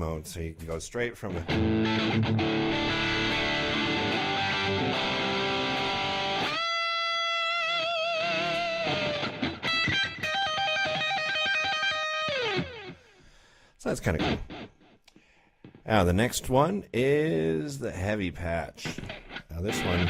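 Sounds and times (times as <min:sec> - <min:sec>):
overdriven electric guitar lead: 0:01.3 - 0:13.1, 0:14.1 - 0:15.8, 0:18.8 - 0:20.0.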